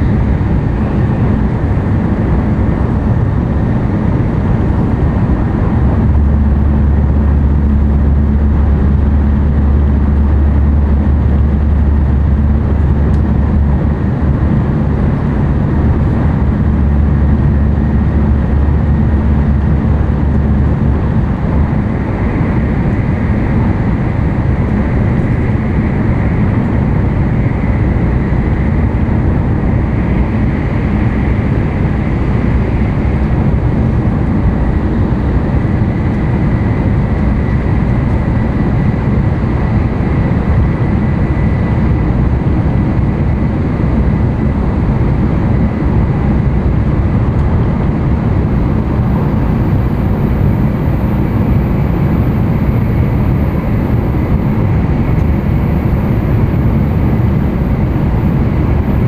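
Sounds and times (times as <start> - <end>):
train deep rumble: 0.0 - 59.0
faint high whine: 21.4 - 59.0.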